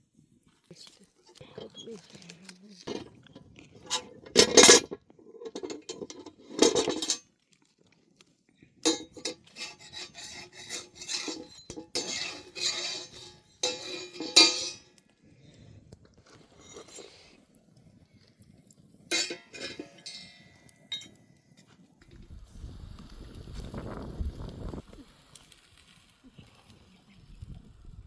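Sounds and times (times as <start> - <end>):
metal dishes clattering: 2.8 - 3.2, 3.8 - 7.2, 8.9 - 14.9, 19.1 - 21.2
utensils scraping: 3.8 - 7.2, 8.9 - 15.0, 16.4 - 17.2, 19.1 - 21.1.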